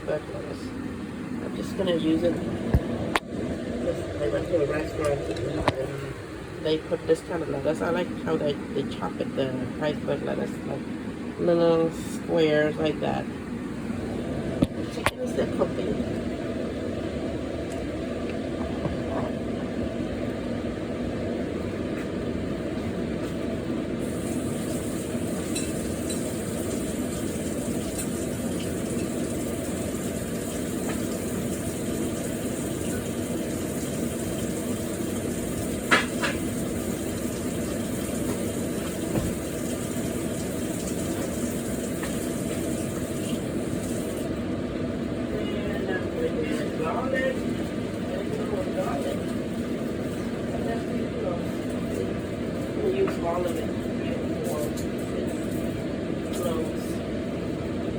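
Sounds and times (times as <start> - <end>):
chicken sizzling in a pan: 24.0 - 44.2.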